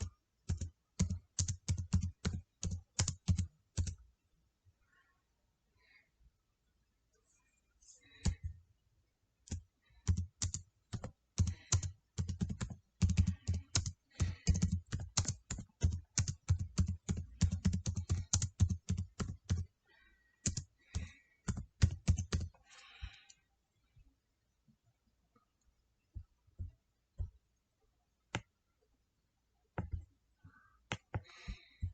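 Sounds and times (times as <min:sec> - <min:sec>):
typing on computer keyboard: 0:00.0 - 0:04.0, 0:09.4 - 0:23.4.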